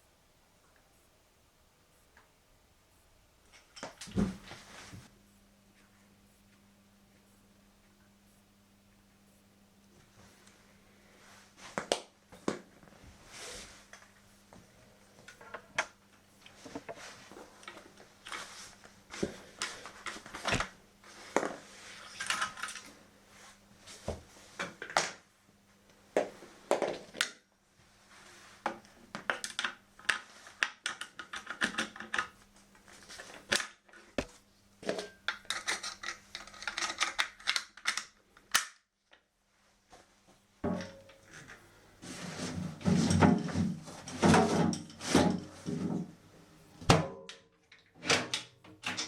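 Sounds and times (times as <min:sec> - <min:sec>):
faint steady hum: 0:00.0 - 0:49.0
small parts and tools rattling: 0:21.4 - 0:22.9, 0:34.8 - 0:38.6.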